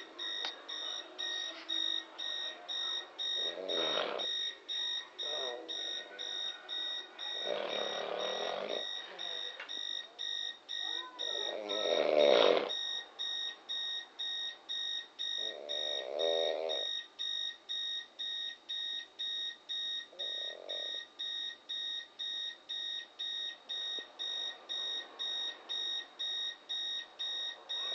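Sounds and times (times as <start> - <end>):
alarm clock beeping: 0.0 - 27.9
person snoring: 3.4 - 4.3, 5.2 - 6.1, 7.3 - 8.9, 11.2 - 12.7, 15.4 - 16.9, 20.1 - 21.0.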